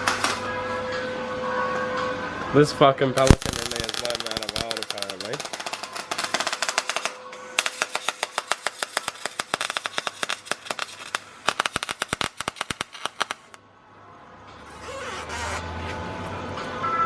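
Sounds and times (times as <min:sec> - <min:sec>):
rapid sharp clicks: 0:03.2 - 0:13.6.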